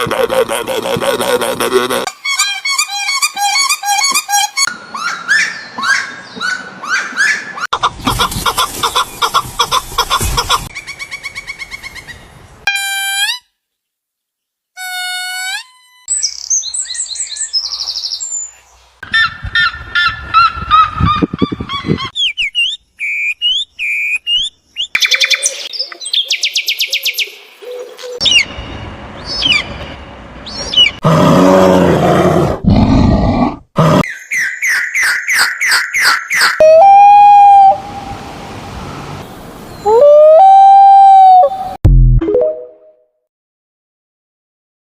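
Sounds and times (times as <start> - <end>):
bird calls and songs: 3.4 - 12.6, 16.1 - 31.0, 34.0 - 36.6.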